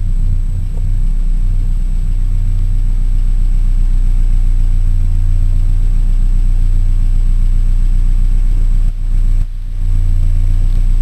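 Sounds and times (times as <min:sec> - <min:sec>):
car engine idling with pulsing exhaust: 0:00.0 - 0:11.0.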